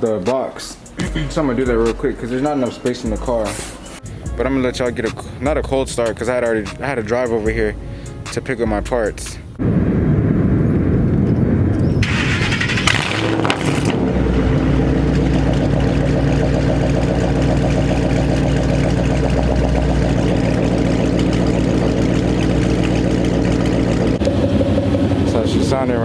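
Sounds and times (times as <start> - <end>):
car engine starting and idling: 9.5 - 26.0.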